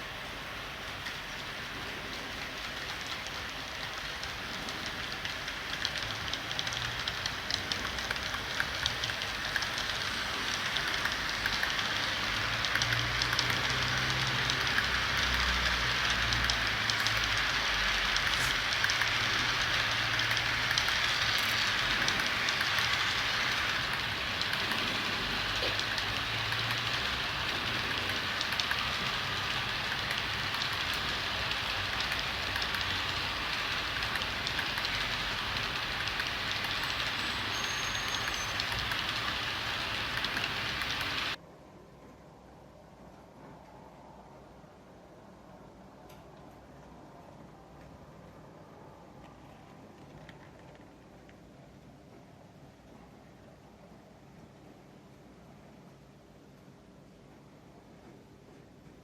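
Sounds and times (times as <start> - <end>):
freight train rolling past: 0.0 - 41.4.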